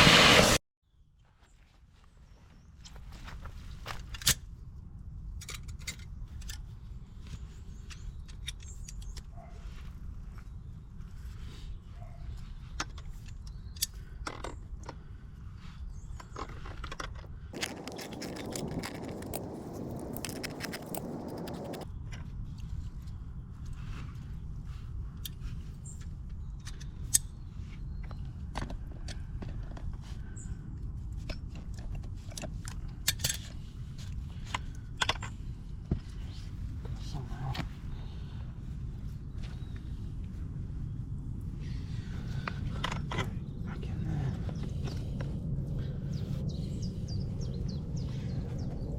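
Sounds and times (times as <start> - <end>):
steady low rumble: 17.4 - 26.6, 28.9 - 48.9
coarse dull scraping: 17.5 - 21.8.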